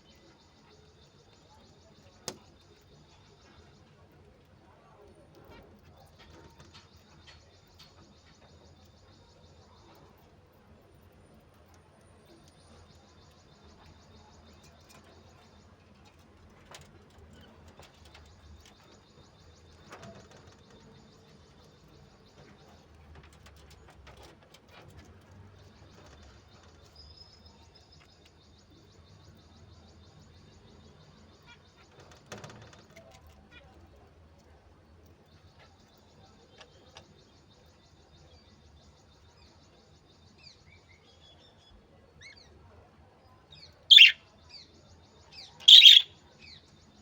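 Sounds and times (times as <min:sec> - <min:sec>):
soft bird chirp: 0:00.0 - 0:47.0
birds pecking taps and rustles: 0:02.1 - 0:08.4, 0:14.5 - 0:27.0, 0:31.7 - 0:35.8.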